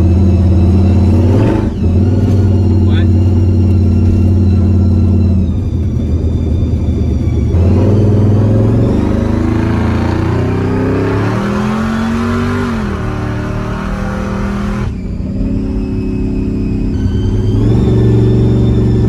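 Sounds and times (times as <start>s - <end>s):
truck engine accelerating: 0.0s - 19.0s.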